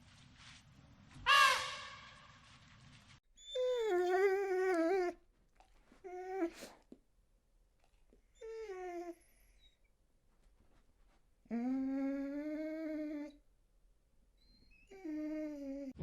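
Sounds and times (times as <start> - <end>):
dog whining: 3.4 - 6.9, 8.2 - 9.9, 11.5 - 13.4, 14.4 - 16.0.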